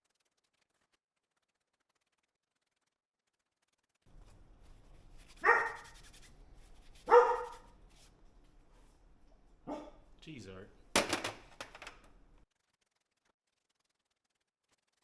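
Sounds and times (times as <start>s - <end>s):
dog barking: 5.4s - 6.0s, 7.0s - 7.8s, 9.6s - 10.1s.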